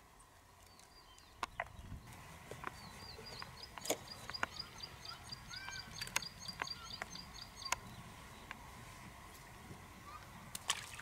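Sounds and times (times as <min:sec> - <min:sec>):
soft low bird calls: 0:00.1 - 0:09.0, 0:09.9 - 0:10.5
bird chirping rapidly: 0:02.8 - 0:08.4
sharp clicks: 0:05.6 - 0:07.8.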